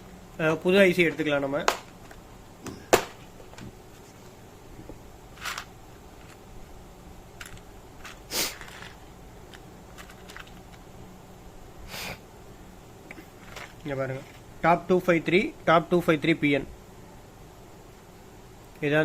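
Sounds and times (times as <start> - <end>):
handling rustles: 0.9 - 6.6, 7.4 - 10.9, 13.1 - 14.5.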